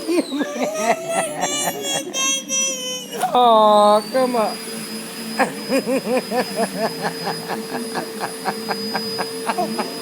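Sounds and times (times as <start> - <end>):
vacuum cleaner running: 0.0 - 2.2, 3.0 - 10.0
child whimpering: 0.0 - 3.8.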